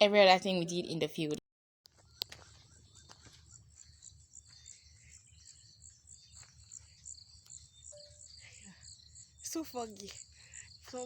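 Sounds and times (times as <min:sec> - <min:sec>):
insects chirping: 0:02.2 - 0:11.0.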